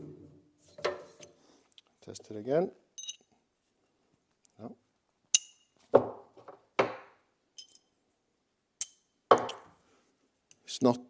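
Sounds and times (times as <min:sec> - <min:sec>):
steel hinge parts clinking: 0:03.0 - 0:03.3, 0:07.6 - 0:07.9.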